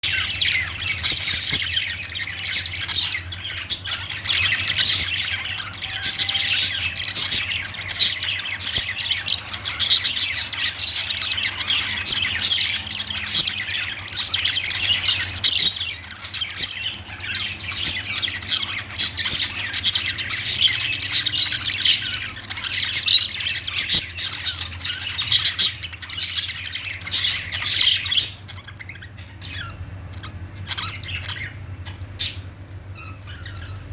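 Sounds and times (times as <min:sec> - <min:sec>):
budgerigars chirping and chattering: 0:00.0 - 0:33.9.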